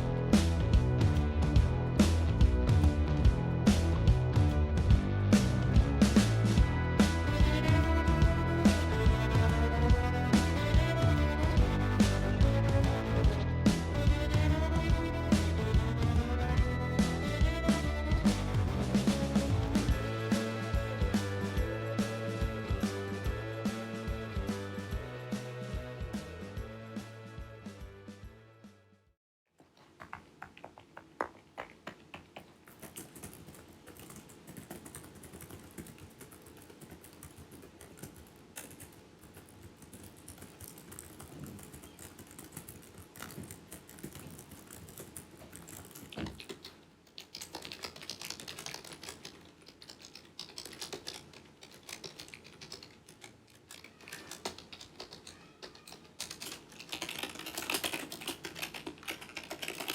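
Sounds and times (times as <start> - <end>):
typing on computer keyboard: 32.7 - 59.9.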